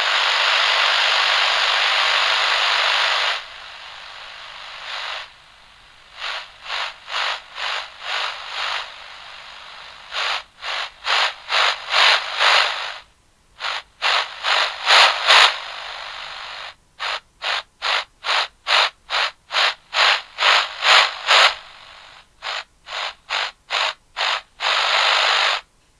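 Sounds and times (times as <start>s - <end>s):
pulsing radio static hiss: 0.0s - 25.7s.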